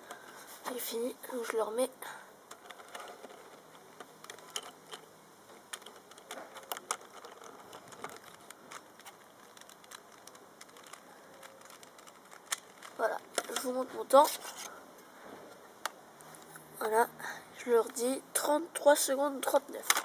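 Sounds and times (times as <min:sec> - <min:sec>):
plastic puzzle cube clicking: 0:02.5 - 0:13.9, 0:19.8 - 0:20.0.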